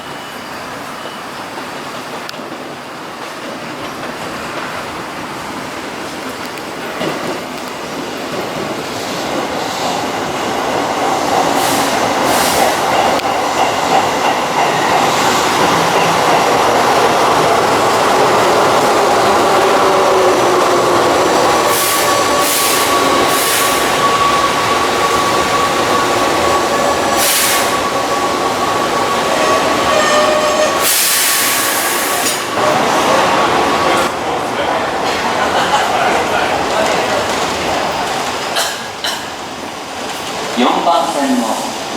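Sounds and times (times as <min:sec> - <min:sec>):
electric train arriving: 0:00.0 - 0:41.9
air hisses: 0:11.5 - 0:12.9, 0:21.6 - 0:24.5, 0:27.0 - 0:28.1, 0:30.8 - 0:32.6
wheel or brake squeal: 0:21.8 - 0:31.2.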